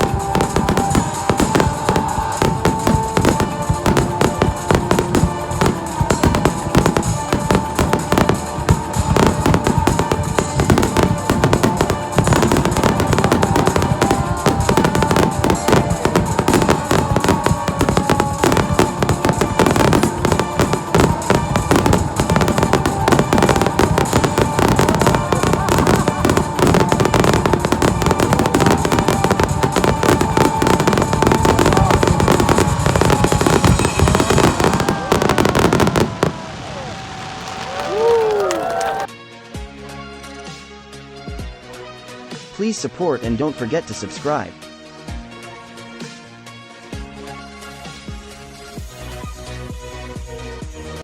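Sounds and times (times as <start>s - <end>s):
fireworks bangs and crackles: 0.0s - 39.1s, 46.9s - 51.0s
voices: 0.0s - 39.1s
music: 0.0s - 51.0s.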